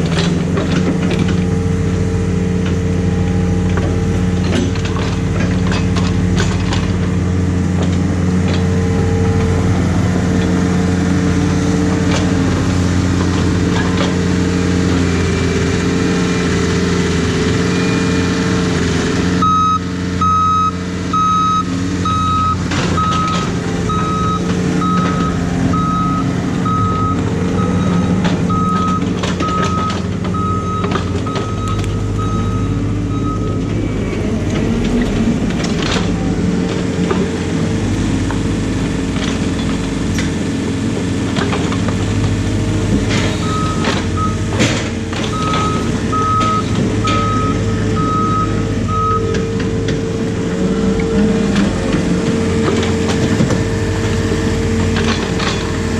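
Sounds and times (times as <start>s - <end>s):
excavator diesel engine running: 0.0s - 55.9s
warning alarm beeping: 19.4s - 33.8s.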